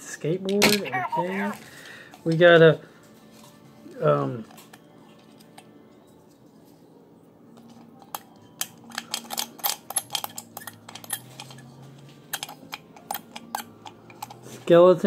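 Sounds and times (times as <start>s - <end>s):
plastic toys clicking and clattering: 7.6s - 14.7s.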